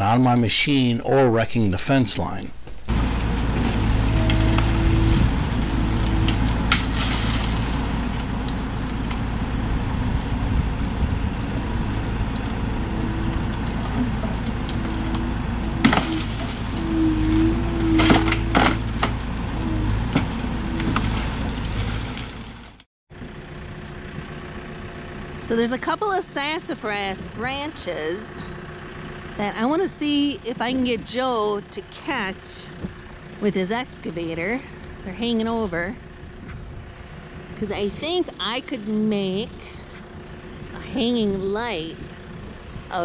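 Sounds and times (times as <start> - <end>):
diesel engine under load: 0.0 - 43.0
hydraulics whining: 0.0 - 43.0
wood snapping and splintering: 2.8 - 22.8.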